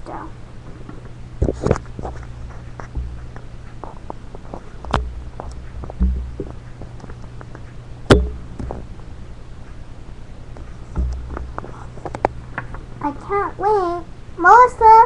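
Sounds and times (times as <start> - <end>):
low electrical hum: 0.0 - 15.0
dull thump: 2.8 - 3.4, 4.9 - 6.6, 8.1 - 8.9, 10.9 - 11.6.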